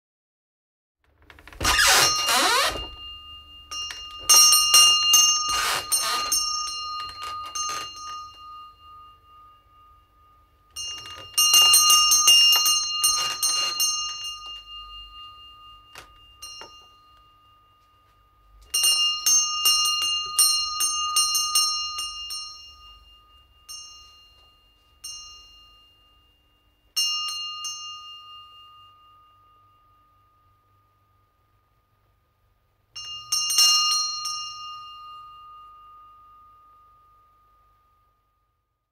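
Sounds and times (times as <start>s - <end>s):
door hinge squeaking: 1.2s - 3.1s, 5.5s - 6.5s
shop doorbell jangling: 1.6s - 17.9s, 18.5s - 29.0s, 33.0s - 36.3s.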